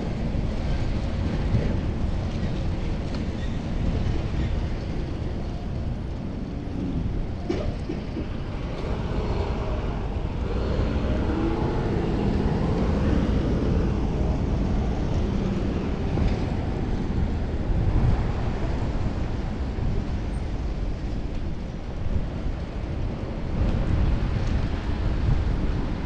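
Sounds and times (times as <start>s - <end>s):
city traffic noise: 0.0s - 26.0s
wind on camera microphone: 0.0s - 26.0s
passing motor vehicle hum: 5.6s - 26.0s.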